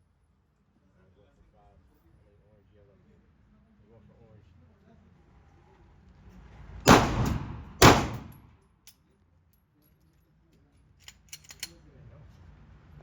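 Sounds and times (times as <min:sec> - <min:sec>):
gunshots with ringing tail: 0:06.9 - 0:08.4.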